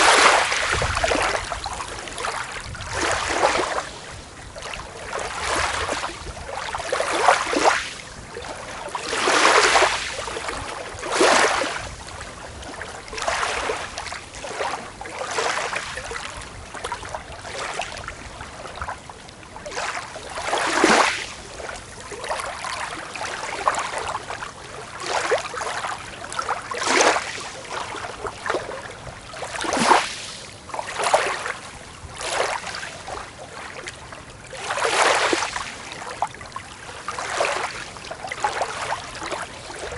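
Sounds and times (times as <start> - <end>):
small waves breaking on beach: 0.0 - 39.9.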